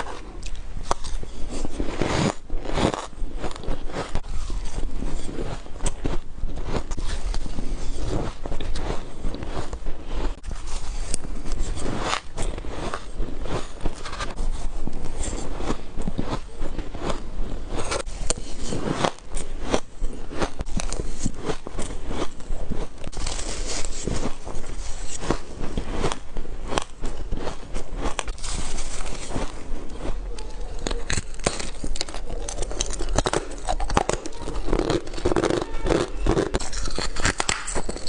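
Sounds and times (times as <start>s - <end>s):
ice crunching between teeth: 0.0s - 38.0s.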